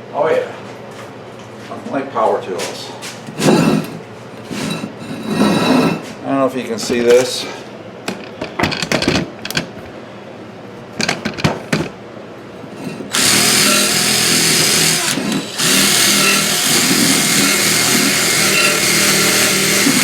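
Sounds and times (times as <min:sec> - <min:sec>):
wire wheel scouring metal: 0:03.3 - 0:06.1, 0:12.7 - 0:20.0
handling knocks and clicks: 0:11.0 - 0:12.0.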